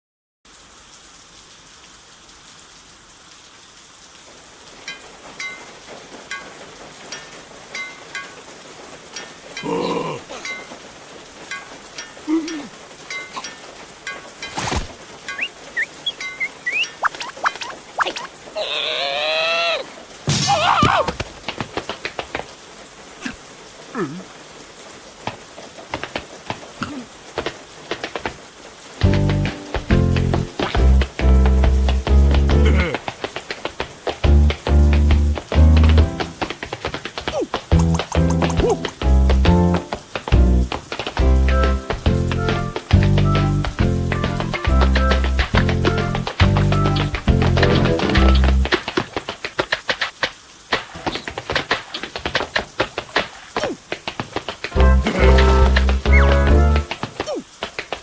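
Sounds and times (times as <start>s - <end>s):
steady rain hiss: 0.4s - 58.0s
plinking water drops: 4.8s - 18.4s
small vocal noises: 9.6s - 10.7s, 12.2s - 13.5s, 14.5s - 21.2s, 23.2s - 24.4s, 26.8s - 27.2s, 32.5s - 33.1s, 53.6s - 53.9s, 54.8s - 56.4s, 57.2s - 57.5s
cartoon character wavering squeal: 15.4s - 19.9s
music: 29.0s - 32.8s, 34.2s - 36.5s, 37.7s - 48.7s, 54.8s - 57.0s.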